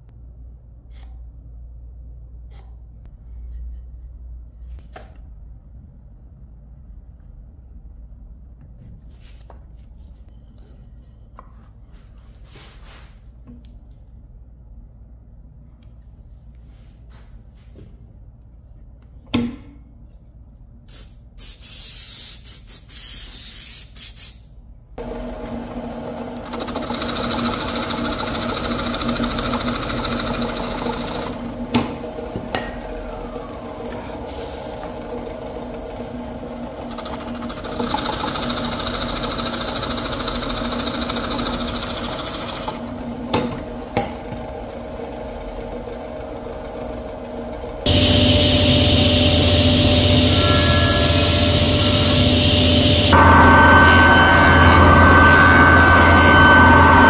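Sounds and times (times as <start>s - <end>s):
short bursts of hiss: 20.9s - 24.5s
woodworking power tool humming: 25.0s - 57.0s
high cutting noise: 40.8s - 57.0s.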